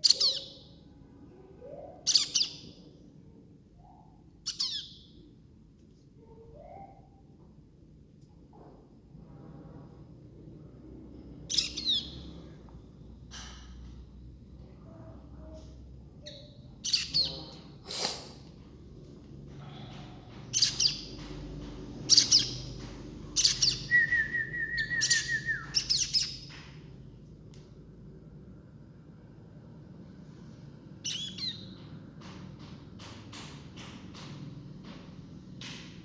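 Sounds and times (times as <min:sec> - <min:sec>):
baby birds chirping: 0:00.0 - 0:00.8, 0:01.8 - 0:02.8, 0:04.4 - 0:05.2, 0:11.3 - 0:12.7, 0:16.2 - 0:18.4, 0:19.6 - 0:27.0, 0:31.0 - 0:34.3.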